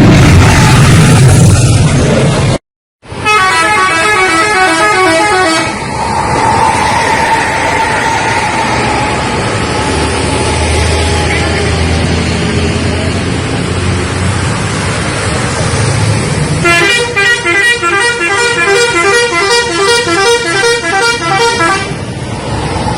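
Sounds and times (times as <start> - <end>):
vehicle engine rumbling: 0.0 - 22.9
bus multi-tone horn melody: 3.1 - 5.8, 16.6 - 22.2.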